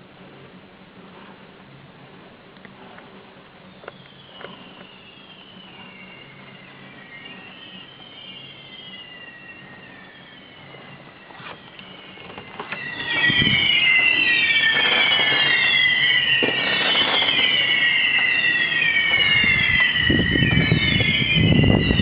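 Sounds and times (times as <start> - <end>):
fireworks whistling: 3.6 - 22.0
firework cracks: 11.8 - 20.0.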